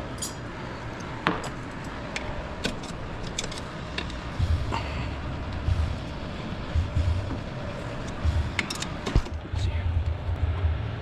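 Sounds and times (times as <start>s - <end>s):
dull low thumps: 4.3s - 7.5s, 8.2s - 8.6s, 9.4s - 11.0s.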